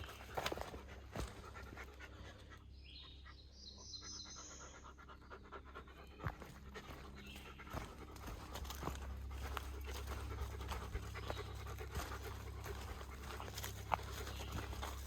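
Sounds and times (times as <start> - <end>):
footsteps on rocky trail: 0.0 - 2.0, 6.2 - 15.0.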